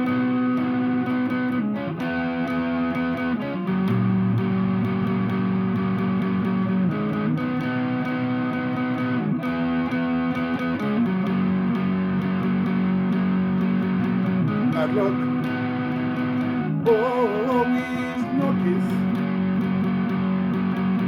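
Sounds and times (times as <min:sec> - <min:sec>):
effects-laden guitar chords: 0:00.0 - 0:21.0.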